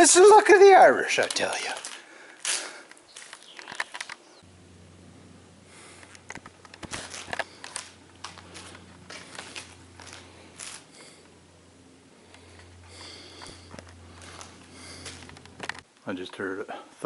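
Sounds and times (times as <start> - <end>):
light clicks and rustles: 1.2 - 4.4, 5.9 - 11.3, 12.3 - 16.4
steady low hum: 4.2 - 16.0.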